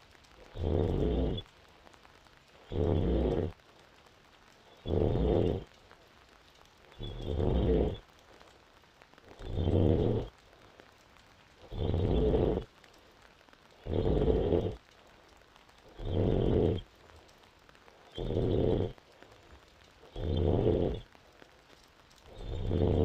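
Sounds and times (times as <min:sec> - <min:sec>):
woman snoring: 0:20.2 - 0:21.0, 0:22.3 - 0:23.0.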